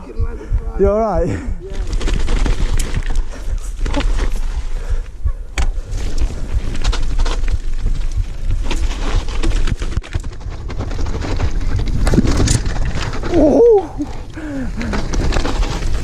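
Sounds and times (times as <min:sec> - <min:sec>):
steady rumble: 0:00.0 - 0:16.0
wind buffeting microphone: 0:00.0 - 0:16.0
bike knocks and rattles: 0:00.8 - 0:16.0
person exclaiming oh: 0:13.3 - 0:14.0.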